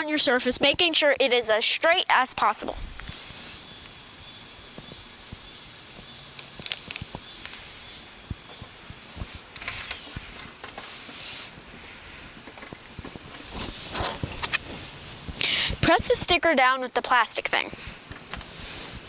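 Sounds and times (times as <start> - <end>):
steady background hiss: 0.0 - 19.0
transfer tape rustling: 5.9 - 15.4.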